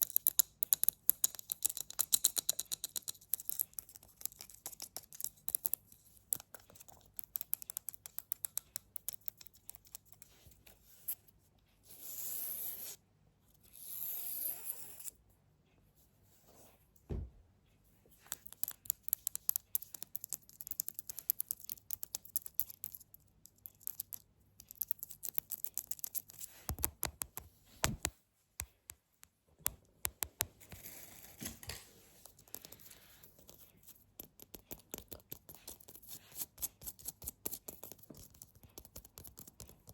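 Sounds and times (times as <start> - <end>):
fingertip tapping: 23.6 - 30.5.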